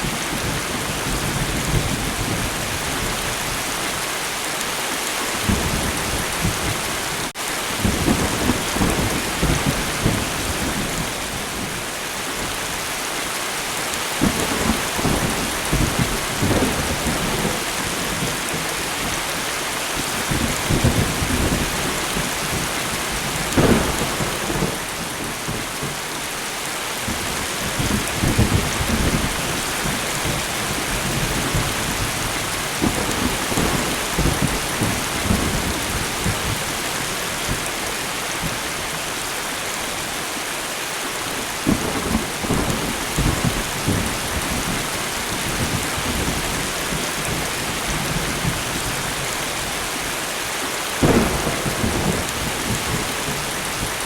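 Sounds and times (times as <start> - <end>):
rain falling: 0.0 - 54.0
thunder rumbling: 14.2 - 19.2, 20.0 - 26.0, 51.0 - 54.0.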